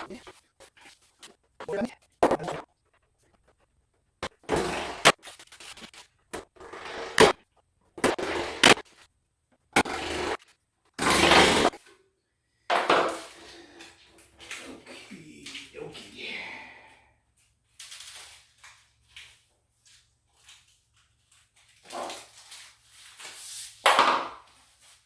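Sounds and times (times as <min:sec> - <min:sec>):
board parts scraping: 0:04.2 - 0:07.4, 0:08.0 - 0:09.0, 0:09.8 - 0:11.8.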